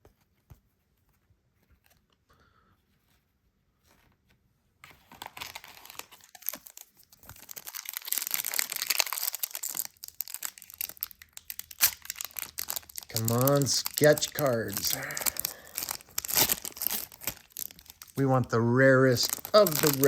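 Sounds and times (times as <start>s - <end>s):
wrapper being torn and crinkled: 5.0s - 20.0s.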